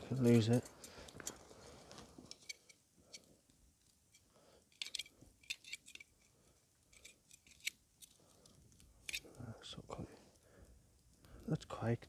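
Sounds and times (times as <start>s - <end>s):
campfire crackling and popping: 7.8s - 12.0s.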